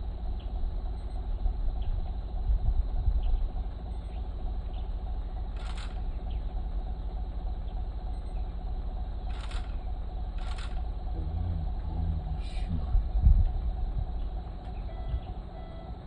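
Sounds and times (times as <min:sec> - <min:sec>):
vehicle engine rumbling: 0:00.0 - 0:16.0
heavy low bump: 0:10.9 - 0:15.3.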